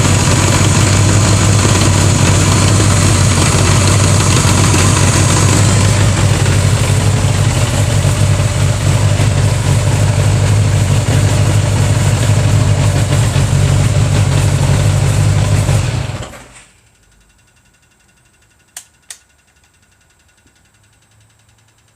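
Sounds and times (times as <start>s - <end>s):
motorcycle engine idling: 0.0s - 16.1s.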